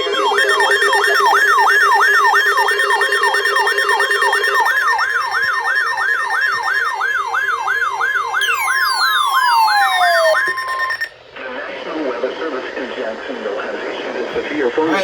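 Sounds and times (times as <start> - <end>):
electronic emergency alert siren: 0.0 - 11.1.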